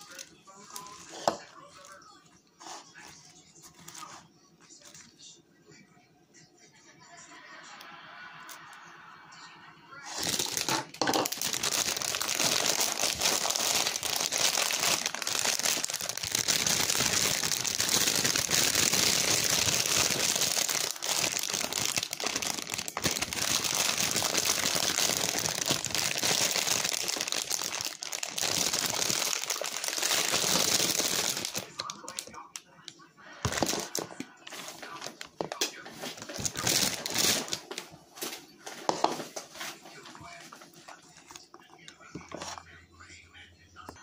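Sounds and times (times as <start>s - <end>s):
salad crinkling and rustling: 0.0s - 2.0s, 10.1s - 32.4s, 33.5s - 41.4s.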